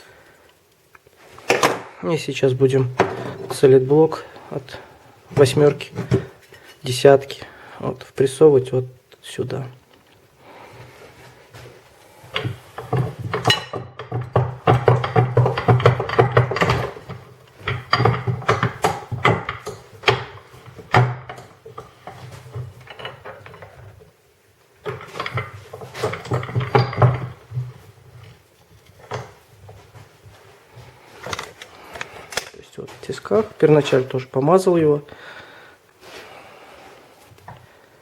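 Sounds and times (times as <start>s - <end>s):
metal clanks and knocks: 2.9s - 3.8s, 12.3s - 24.0s, 24.8s - 30.0s.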